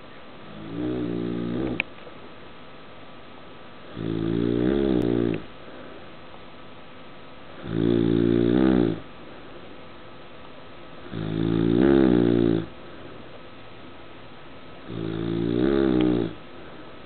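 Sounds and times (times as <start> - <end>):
loud rasping snores: 0.5 - 1.8, 3.9 - 5.4, 7.6 - 9.0, 11.1 - 12.7, 14.9 - 16.4.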